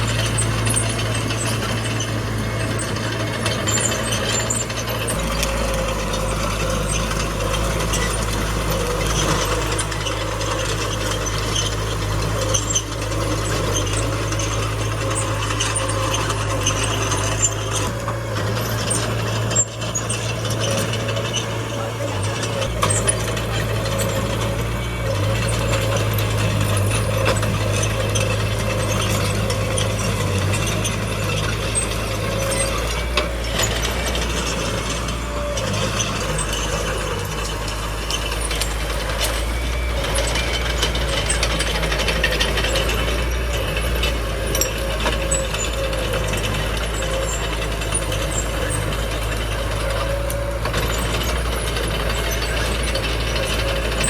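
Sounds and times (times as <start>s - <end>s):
diesel engine running: 0.0s - 54.0s
steel tracks clanking: 0.0s - 54.0s.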